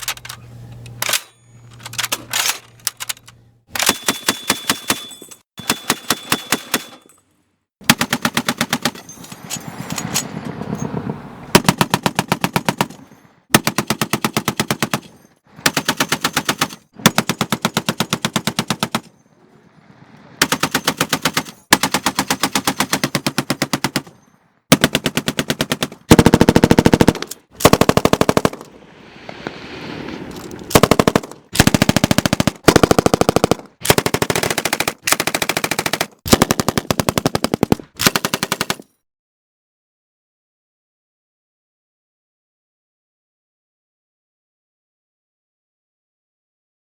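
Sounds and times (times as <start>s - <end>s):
machine-gun fire bursts: 3.8s - 7.0s, 7.8s - 9.0s, 11.5s - 19.2s, 19.8s - 28.7s, 30.7s - 38.8s.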